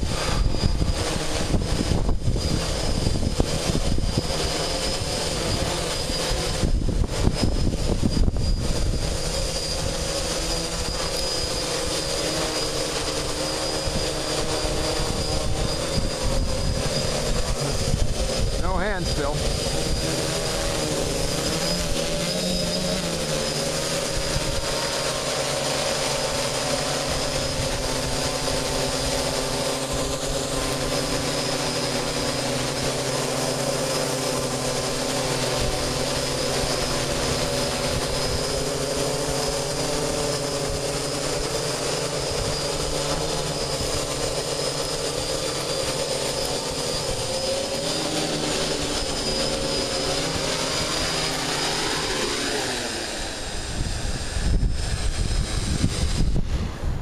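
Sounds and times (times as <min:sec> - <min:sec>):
wind rushing over microphone: 0:00.0 - 0:31.0, 0:46.7 - 0:57.0
drone propellers whirring: 0:00.0 - 0:57.0.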